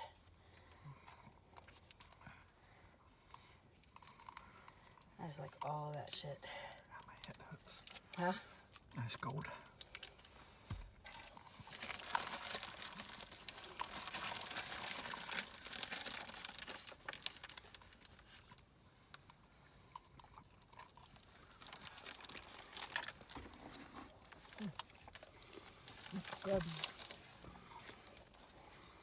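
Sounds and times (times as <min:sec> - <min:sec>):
paper wrapper crinkling: 0:11.0 - 0:18.6, 0:20.3 - 0:29.0.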